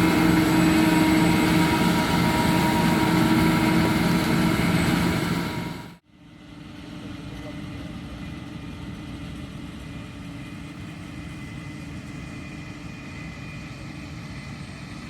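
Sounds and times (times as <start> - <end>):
motor running steadily: 0.0 - 6.0.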